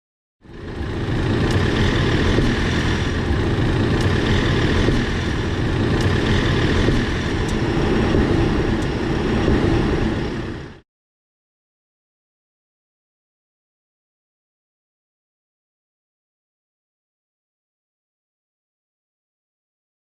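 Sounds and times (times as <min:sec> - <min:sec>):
car road and running noise: 0:00.4 - 0:10.8.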